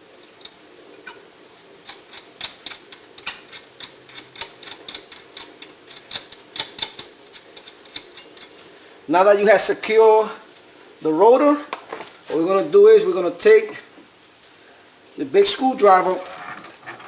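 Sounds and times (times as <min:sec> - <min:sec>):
wheel nuts clicking onto studs: 0:00.2 - 0:08.6.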